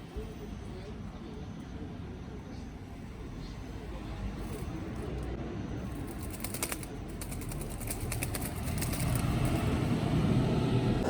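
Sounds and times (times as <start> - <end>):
bird wings fluttering: 6.0 - 9.7.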